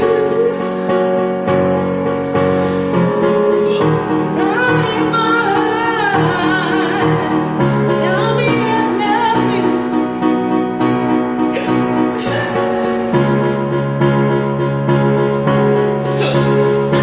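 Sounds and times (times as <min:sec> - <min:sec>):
woman singing: 0:00.0 - 0:01.4, 0:03.7 - 0:10.3, 0:11.7 - 0:13.3
karaoke backing track: 0:00.0 - 0:17.0.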